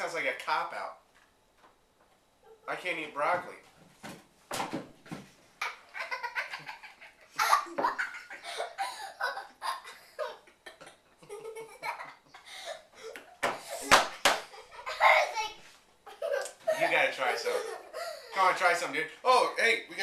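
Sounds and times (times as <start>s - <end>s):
people laughing: 16.2s - 18.3s.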